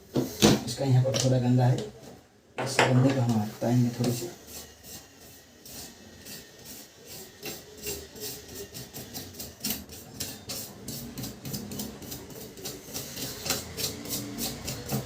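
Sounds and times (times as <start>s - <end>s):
scraping and rubbing strokes: 3.2s - 15.0s.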